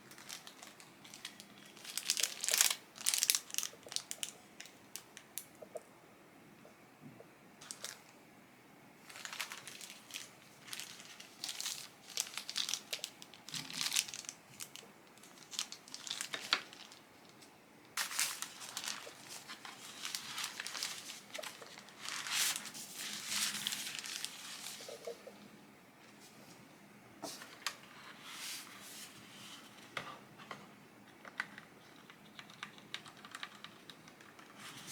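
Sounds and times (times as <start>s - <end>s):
packaging tearing: 0.0s - 4.7s, 9.1s - 17.0s, 18.0s - 24.9s
packaging crinkling: 0.0s - 5.5s, 7.6s - 8.1s, 9.0s - 17.4s, 18.0s - 25.3s.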